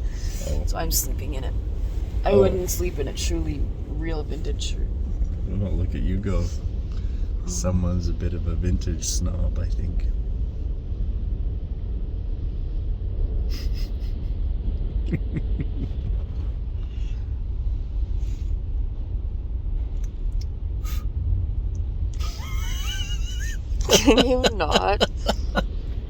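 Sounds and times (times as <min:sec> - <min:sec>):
low engine rumble: 0:00.0 - 0:26.0
wavering whiny vocal sound: 0:02.2 - 0:03.0, 0:22.3 - 0:25.6.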